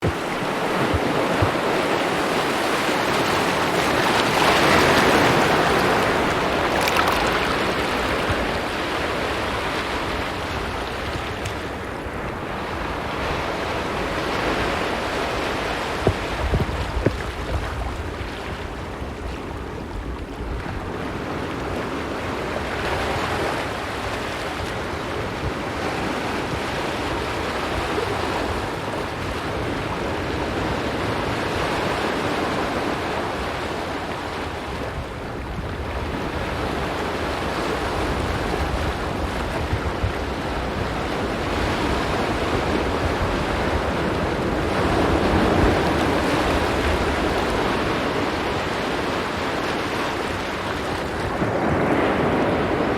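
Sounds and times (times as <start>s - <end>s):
surf washing onto rocks: 0.0s - 11.8s
wind rumbling on microphone: 0.0s - 52.9s.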